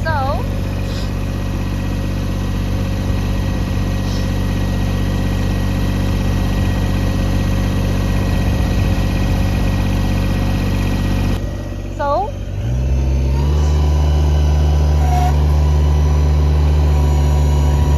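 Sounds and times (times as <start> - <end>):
tractor diesel engine running: 0.0 - 17.9.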